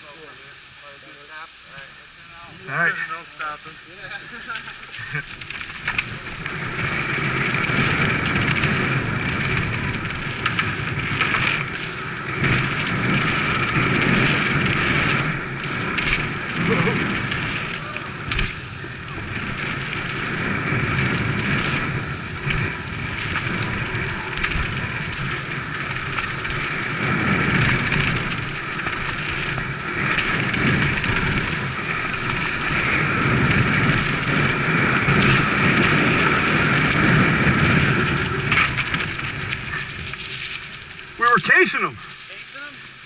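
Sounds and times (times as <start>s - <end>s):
bike tyres rattling over rough ground: 0.0s - 43.0s.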